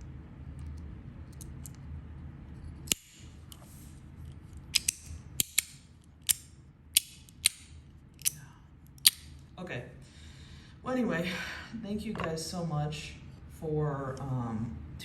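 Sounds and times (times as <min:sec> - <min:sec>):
fidget slider sharp metallic clicks: 0:04.8 - 0:06.4.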